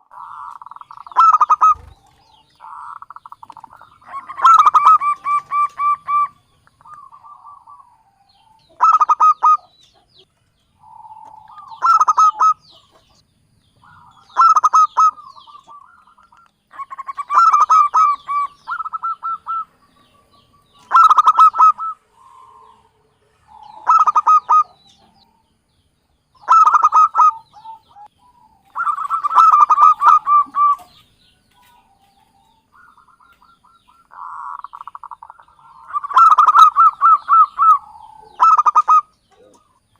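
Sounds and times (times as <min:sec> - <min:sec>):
dove cooing: 0:00.0 - 0:10.1, 0:10.8 - 0:13.2, 0:13.8 - 0:25.4, 0:26.4 - 0:39.9.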